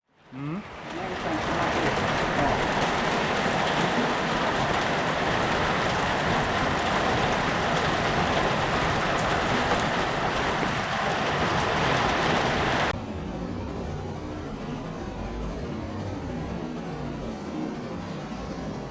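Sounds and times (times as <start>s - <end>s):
hailstones hissing on surfaces: 0.6s - 12.9s
ticks of single hailstones: 0.7s - 12.9s.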